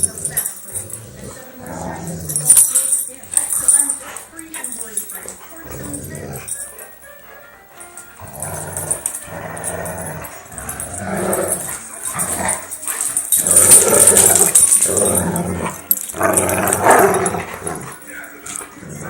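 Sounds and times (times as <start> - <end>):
dogs growling in play: 0.0 - 19.0.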